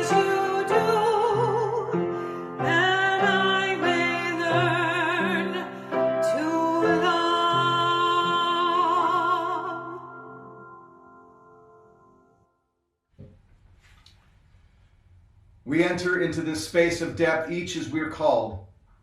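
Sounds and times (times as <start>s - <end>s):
person singing with vibrato: 0.0s - 10.8s.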